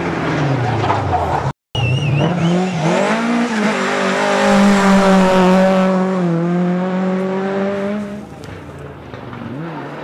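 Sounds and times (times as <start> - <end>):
rally car engine at high revs: 1.9 - 8.6, 9.3 - 10.0.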